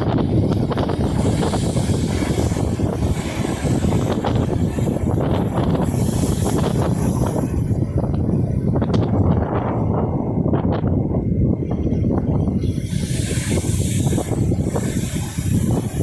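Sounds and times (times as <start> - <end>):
wind buffeting microphone: 0.0 - 16.0
bright hiss: 12.8 - 16.0.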